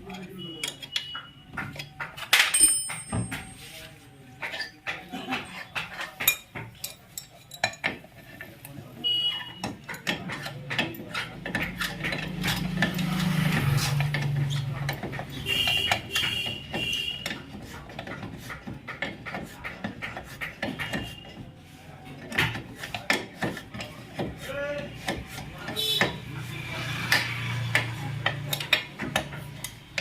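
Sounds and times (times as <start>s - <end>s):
metal tools clinking: 1.8s - 3.8s, 6.0s - 8.5s.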